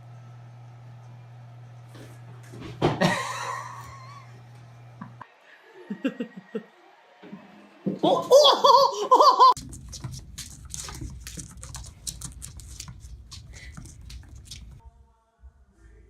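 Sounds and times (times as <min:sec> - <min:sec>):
high-pitched giggling: 0:08.0 - 0:09.6.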